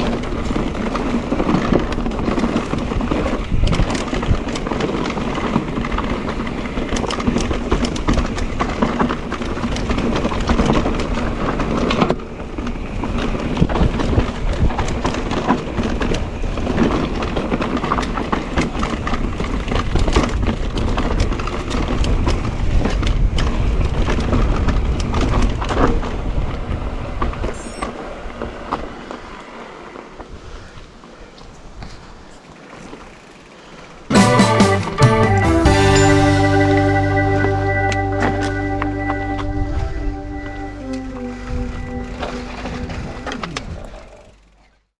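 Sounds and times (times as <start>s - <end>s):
bike knocking and rattling: 0.0s - 27.4s, 31.5s - 34.1s
wind and tyre noise: 0.0s - 34.1s, 38.8s - 44.8s.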